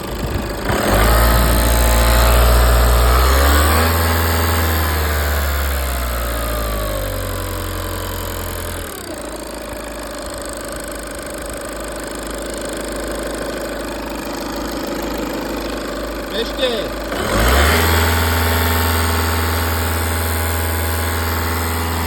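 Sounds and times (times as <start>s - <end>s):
diesel engine revving: 0.0s - 10.6s, 16.3s - 22.0s
engine ticking: 0.0s - 22.0s.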